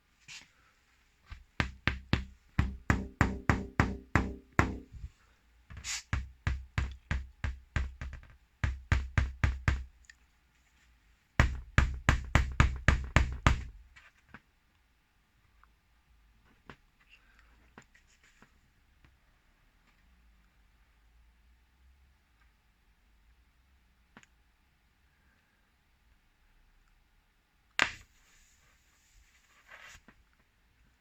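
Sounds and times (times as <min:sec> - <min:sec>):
rapid hollow knocks: 0:01.3 - 0:05.1, 0:05.7 - 0:09.9, 0:11.4 - 0:13.8.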